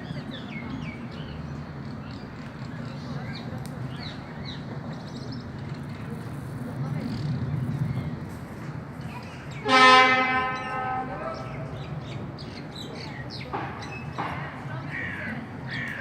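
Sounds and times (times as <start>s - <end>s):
horn blast: 9.6s - 11.6s.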